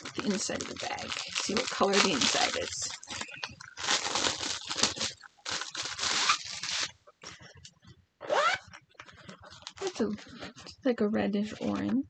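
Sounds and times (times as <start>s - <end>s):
zipper pulled open: 8.2s - 8.7s.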